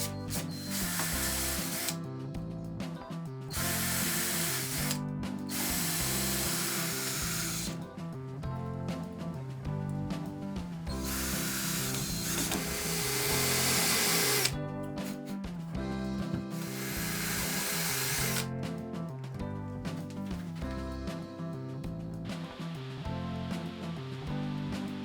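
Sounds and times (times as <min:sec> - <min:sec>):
power tool running: 0:00.0 - 0:02.0, 0:03.5 - 0:07.8, 0:11.0 - 0:15.2, 0:16.5 - 0:18.5
background music: 0:00.0 - 0:25.0.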